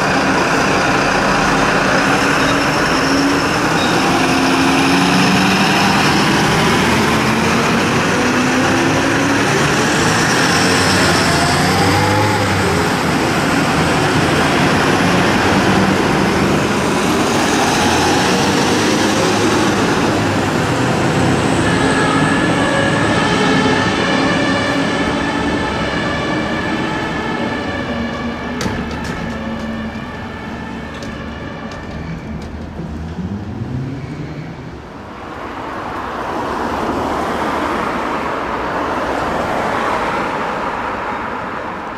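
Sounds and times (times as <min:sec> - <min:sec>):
sirens: 0:00.0 - 0:32.6
heavy vehicle engines: 0:00.0 - 0:41.9.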